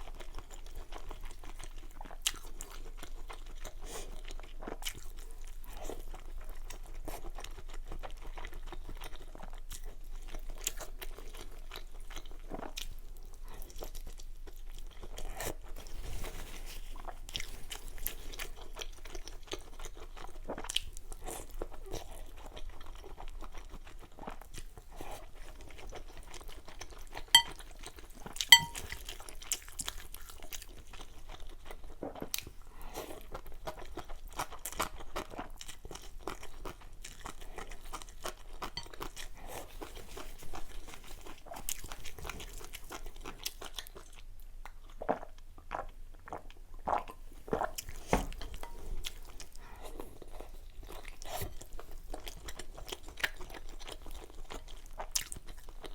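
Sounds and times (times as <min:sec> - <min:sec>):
chewing and crunching: 0:00.0 - 0:55.9
sharp ringing taps: 0:28.6 - 0:28.8.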